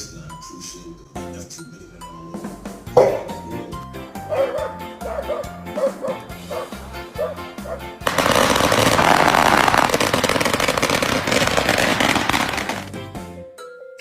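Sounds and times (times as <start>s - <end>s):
rapid crackling rattle: 8.1s - 12.9s.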